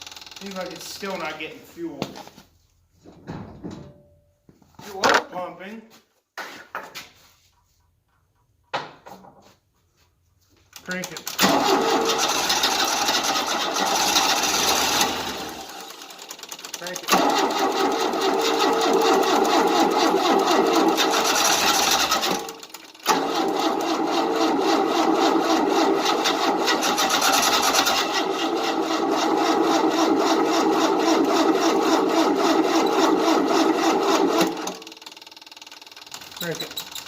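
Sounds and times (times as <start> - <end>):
engine cranking without starting: 0.0 - 1.4, 10.8 - 37.0.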